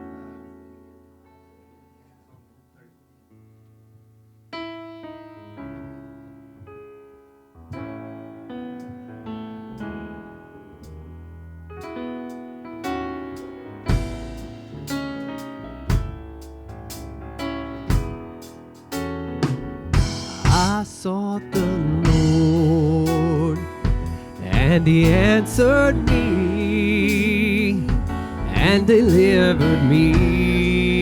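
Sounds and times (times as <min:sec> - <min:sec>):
electric piano chords: 0:00.0 - 0:31.0
drum hits: 0:13.9 - 0:15.0, 0:15.9 - 0:16.3, 0:17.9 - 0:18.4, 0:19.4 - 0:21.0, 0:21.6 - 0:30.7.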